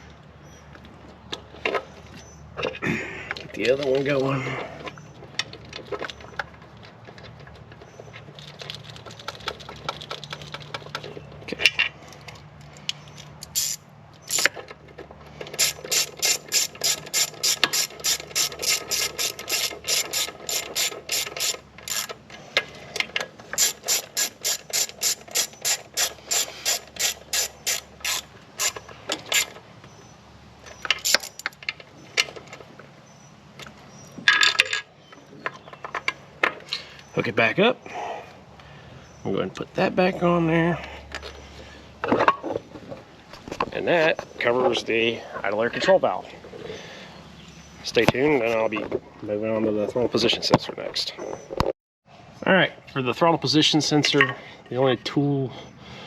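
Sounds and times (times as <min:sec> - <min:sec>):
handling of parts: 0:01.3 - 0:30.0, 0:30.6 - 0:37.1
socket ratchet clicking: 0:13.4 - 0:14.5, 0:15.5 - 0:22.2, 0:23.6 - 0:29.6, 0:30.9 - 0:31.6.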